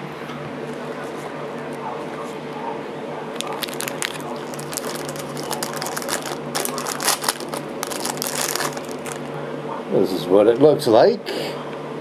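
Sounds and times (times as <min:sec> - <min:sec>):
steady low hum: 0:00.0 - 0:12.0
plastic wrapper crinkling: 0:03.4 - 0:09.3.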